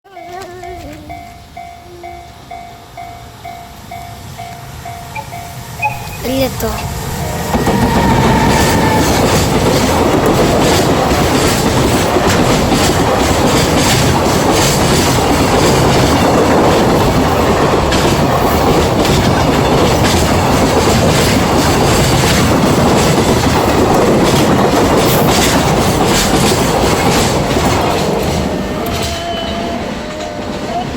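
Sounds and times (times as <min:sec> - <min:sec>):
freight train rumbling past: 0:00.1 - 0:30.9
wheels clattering over rail joints: 0:06.7 - 0:29.2.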